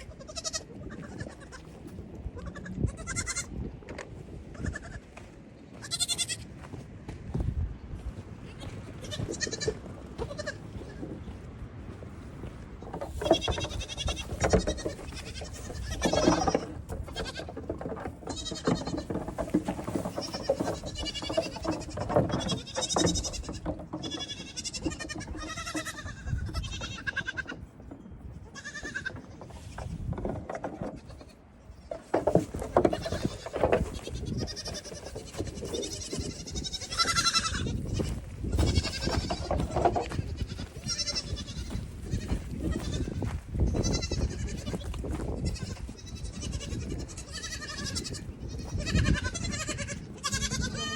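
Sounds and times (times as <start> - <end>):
goat kids bleating: 0.0 - 3.6, 4.5 - 6.6, 8.4 - 11.0, 12.8 - 27.7, 28.3 - 30.0, 30.7 - 50.9
knocks and thumps: 12.9 - 25.9, 28.9 - 31.0, 31.9 - 45.8.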